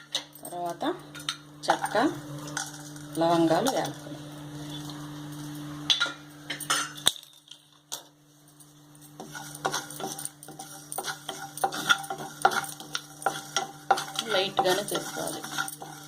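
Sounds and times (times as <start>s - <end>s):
spoon scraping dry pan: 9.1s - 16.0s.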